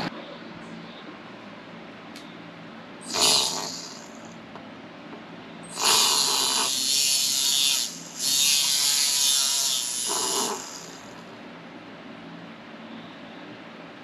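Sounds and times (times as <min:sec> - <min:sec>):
small electric motor whirring: 0:03.1 - 0:04.3, 0:05.7 - 0:11.2.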